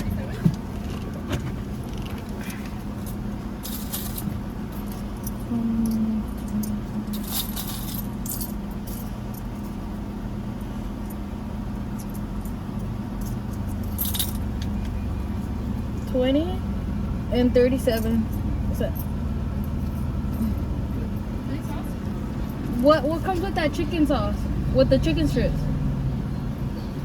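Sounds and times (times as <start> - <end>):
car engine idling: 0.0 - 27.0
coins clinking and jingling: 3.0 - 9.5, 13.2 - 14.8.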